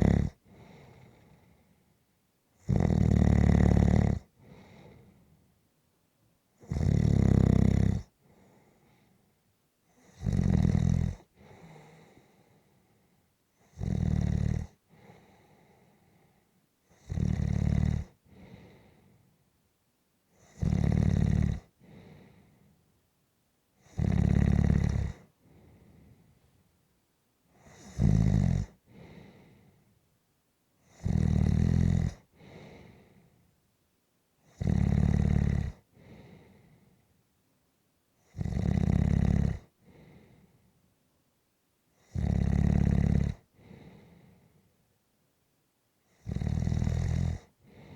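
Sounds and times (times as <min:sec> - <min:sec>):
loud snoring: 0:00.0 - 0:00.4, 0:02.6 - 0:04.3, 0:06.6 - 0:08.1, 0:10.0 - 0:11.3, 0:13.6 - 0:14.8, 0:16.9 - 0:18.2, 0:20.4 - 0:21.7, 0:23.8 - 0:25.3, 0:27.6 - 0:29.2, 0:30.9 - 0:32.6, 0:34.5 - 0:35.8, 0:38.3 - 0:39.7, 0:42.0 - 0:43.5, 0:46.1 - 0:47.9
quiet breath: 0:00.0 - 0:02.6, 0:04.2 - 0:05.7, 0:08.0 - 0:10.2, 0:11.2 - 0:13.8, 0:14.6 - 0:17.0, 0:18.0 - 0:20.6, 0:21.6 - 0:23.0, 0:25.0 - 0:28.0, 0:28.6 - 0:30.2, 0:32.1 - 0:33.8, 0:35.7 - 0:37.5, 0:39.6 - 0:41.0, 0:43.2 - 0:45.0, 0:46.0 - 0:47.9.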